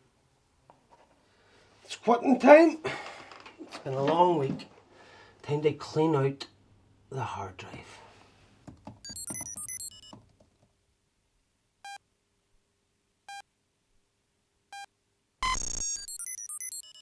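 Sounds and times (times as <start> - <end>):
single beeps: 9.1 - 10.1, 14.8 - 17.0
synthetic bleeps: 9.1 - 10.1, 14.8 - 17.0.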